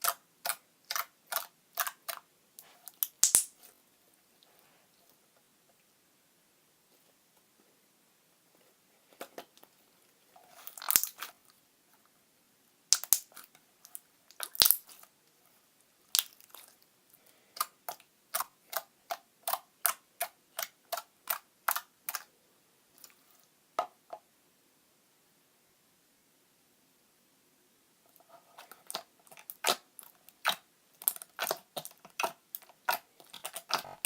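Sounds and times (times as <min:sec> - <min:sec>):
slime squishing and popping: 0:02.9 - 0:03.6, 0:10.7 - 0:11.3, 0:12.9 - 0:15.0, 0:16.1 - 0:16.7, 0:30.4 - 0:34.0.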